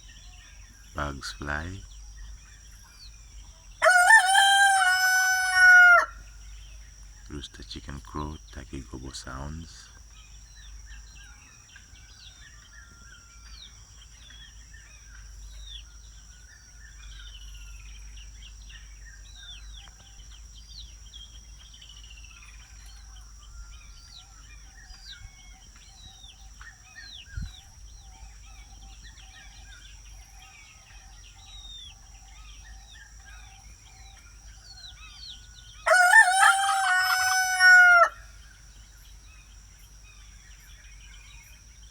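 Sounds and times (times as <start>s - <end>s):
high-pitched insect drone: 0.0s - 41.9s
small birds chirping: 0.0s - 41.9s
rooster crowing: 3.8s - 6.2s, 35.2s - 38.4s.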